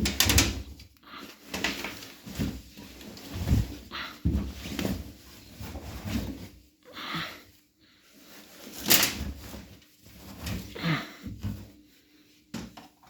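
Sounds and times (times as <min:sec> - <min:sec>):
rustling: 0:00.0 - 0:06.8, 0:07.9 - 0:10.8.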